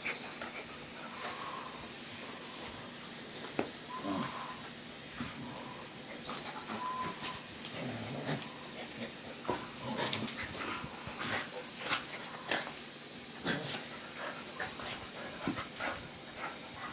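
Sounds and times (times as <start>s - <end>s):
dogs growling and panting: 0.0s - 3.2s, 3.9s - 16.9s
dog whining: 3.9s - 4.6s, 6.7s - 8.8s.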